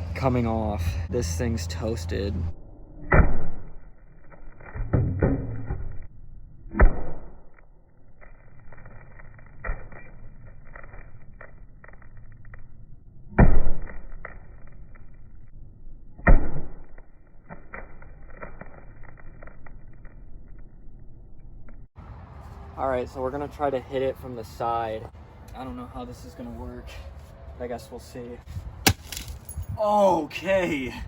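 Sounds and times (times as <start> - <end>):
sledgehammer striking phone: 28.8 - 29.5
broken glass crackling: 28.9 - 29.6.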